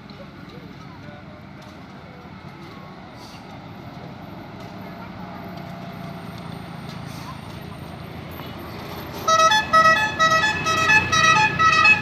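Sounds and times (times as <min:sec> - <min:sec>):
faint voices: 0:00.0 - 0:09.3
diesel bus engine running: 0:00.0 - 0:12.0.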